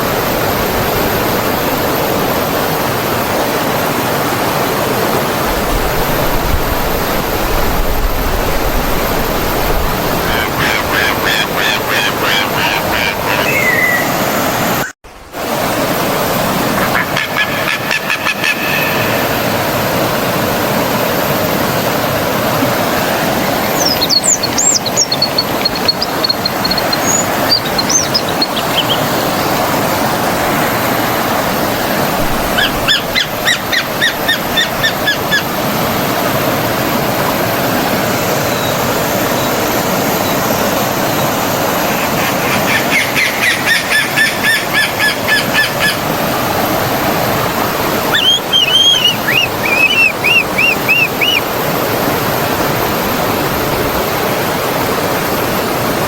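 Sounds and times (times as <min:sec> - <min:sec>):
stream water flowing: 0:00.0 - 0:56.0
birds calling: 0:09.1 - 0:15.0, 0:16.7 - 0:19.6, 0:22.6 - 0:36.0, 0:41.2 - 0:46.3, 0:47.6 - 0:51.9.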